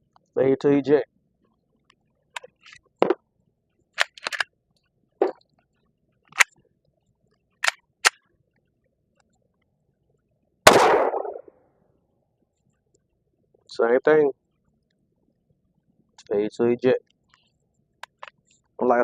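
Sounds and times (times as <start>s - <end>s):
pistol clicks and clacks: 4.0s - 4.5s, 7.6s - 8.2s
pistol shot with echo: 10.7s - 11.4s.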